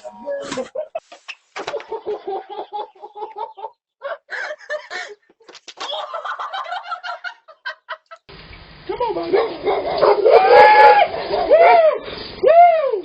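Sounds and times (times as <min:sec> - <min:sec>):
fowl clucking: 0:00.0 - 0:03.8.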